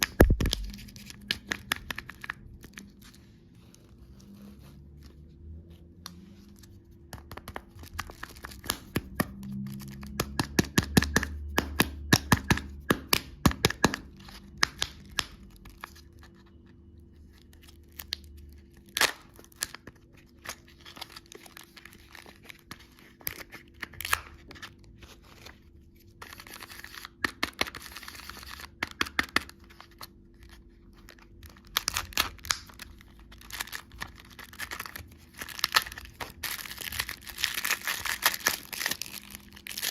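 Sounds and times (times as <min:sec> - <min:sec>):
candy wrappers crinkling: 0:00.0 - 0:04.7, 0:06.4 - 0:11.2, 0:13.6 - 0:39.9.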